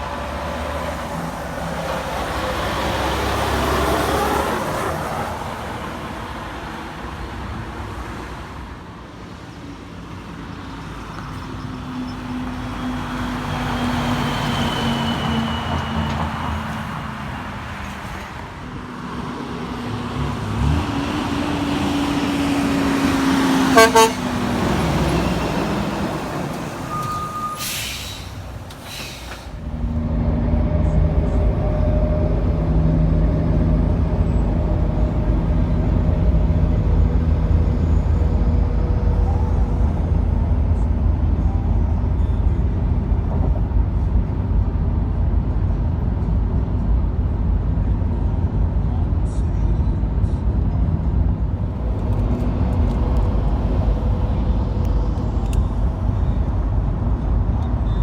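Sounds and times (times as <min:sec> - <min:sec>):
diesel truck engine rumble: 0:00.0 - 0:58.0
air brake hiss: 0:27.0 - 0:29.6.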